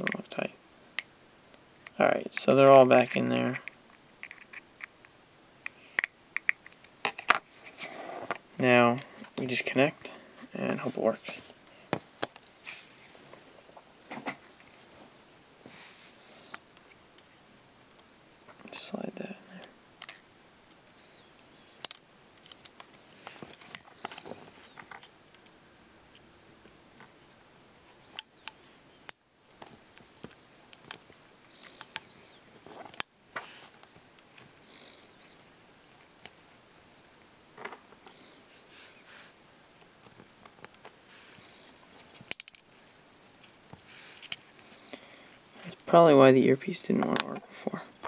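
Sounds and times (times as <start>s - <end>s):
small phone parts clicking: 3.0s - 5.0s, 6.0s - 7.4s, 42.1s - 42.7s.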